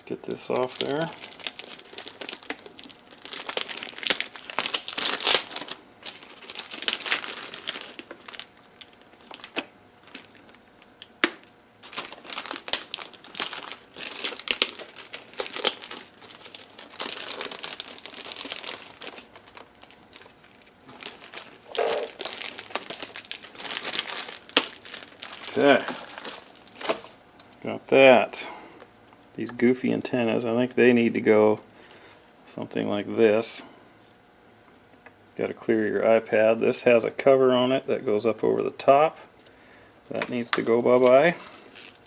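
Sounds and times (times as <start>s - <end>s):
plastic packaging crinkling and tearing: 0.3s - 27.2s, 40.1s - 42.0s.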